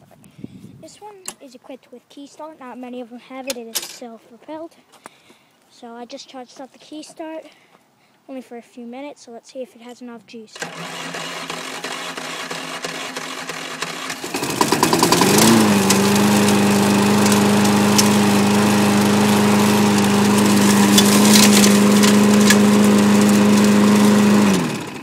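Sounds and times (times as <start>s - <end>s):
electric starter cranking: 10.6s - 25.0s
mower engine running: 10.6s - 25.0s.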